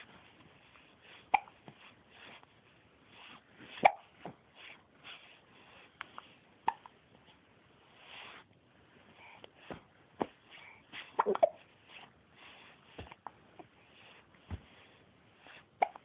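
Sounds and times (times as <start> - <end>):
short sharp hiccups: 1.3 - 1.6, 3.8 - 4.1, 6.6 - 6.9, 15.8 - 16.0.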